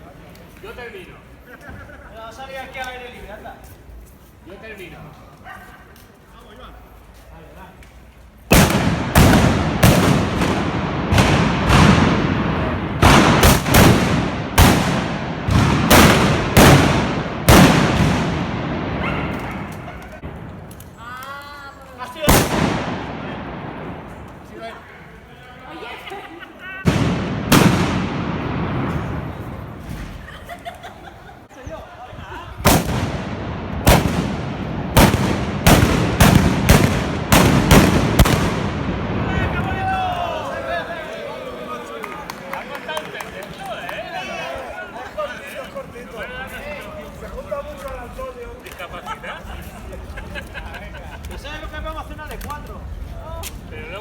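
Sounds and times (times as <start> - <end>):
blunderbuss shots echoing: 8.5 - 21.0, 22.2 - 24.5, 26.8 - 30.2, 32.6 - 40.2.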